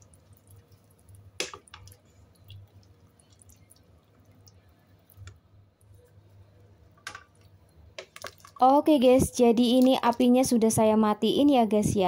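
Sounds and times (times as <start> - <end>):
soup simmering and bubbling: 0.0 - 6.0, 7.0 - 8.6
low steady hum: 0.0 - 12.0.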